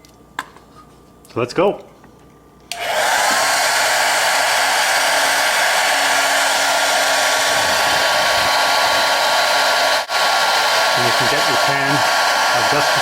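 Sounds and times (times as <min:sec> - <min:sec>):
hair dryer running: 0:02.7 - 0:13.0.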